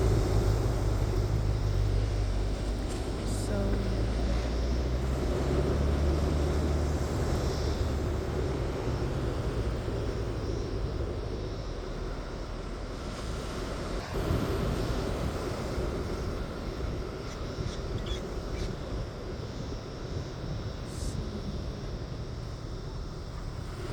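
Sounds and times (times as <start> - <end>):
low engine-like rumble: 0.0 - 23.9.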